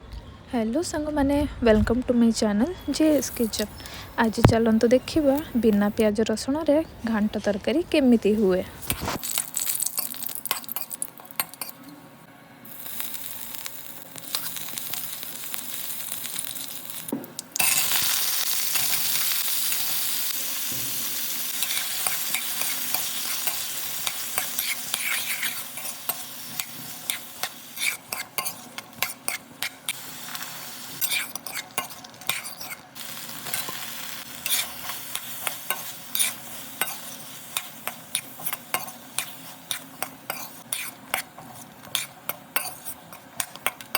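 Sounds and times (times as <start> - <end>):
food frying in hot oil: 9.0 - 11.7, 12.6 - 43.9.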